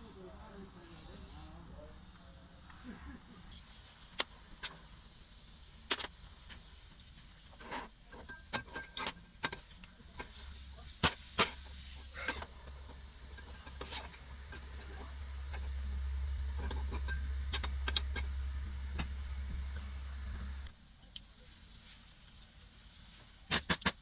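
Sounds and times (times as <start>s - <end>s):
small parts and tools clicking: 3.5s - 21.3s
low rumble: 10.1s - 20.8s.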